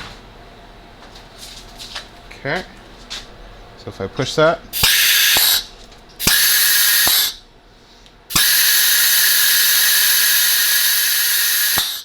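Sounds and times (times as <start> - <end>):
compressed air hissing: 4.8 - 7.4, 8.3 - 12.0.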